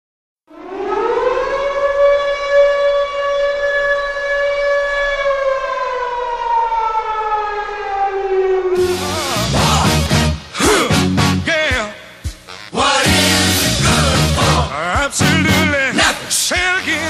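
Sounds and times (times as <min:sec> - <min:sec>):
hockey goal horn blast: 0:08.8 - 0:09.6, 0:12.5 - 0:13.9
rock music: 0:08.8 - 0:17.0.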